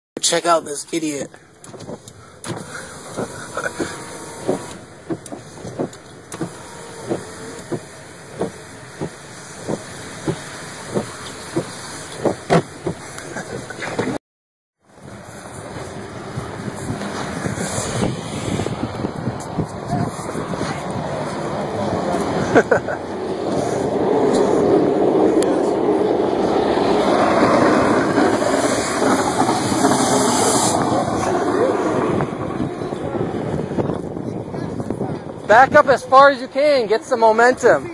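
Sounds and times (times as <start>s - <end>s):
car running noise: 0.2s - 14.2s, 14.8s - 37.9s
regular thump: 1.6s - 14.2s
wheels spinning in snow: 1.7s - 14.2s, 15.0s - 35.0s.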